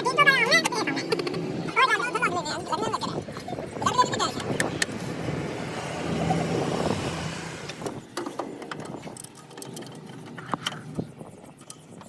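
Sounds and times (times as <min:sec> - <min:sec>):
vehicle engine running: 0:00.0 - 0:08.2.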